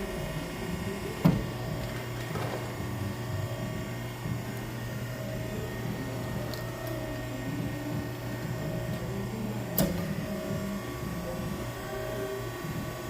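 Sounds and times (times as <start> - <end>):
electric motor hum: 0.0 - 13.0.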